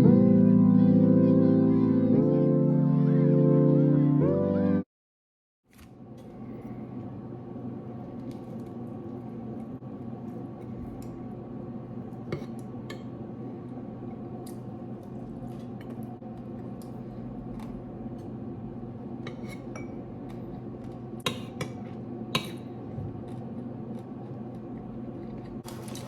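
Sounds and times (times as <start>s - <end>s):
steady background hum: 5.7s - 26.0s
dishes and cutlery clinking: 19.3s - 20.0s.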